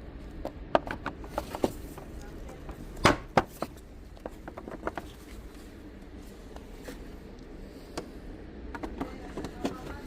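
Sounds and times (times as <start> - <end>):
low steady rumble: 0.0 - 10.0.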